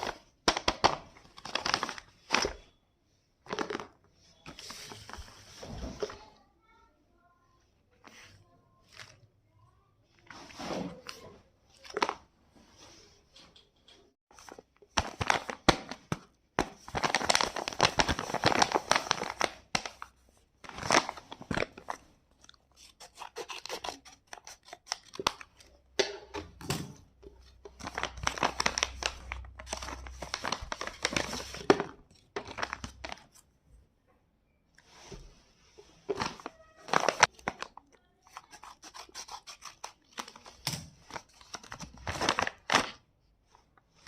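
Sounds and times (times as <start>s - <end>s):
packaging tearing and crinkling: 27.8s - 31.7s, 36.2s - 37.8s.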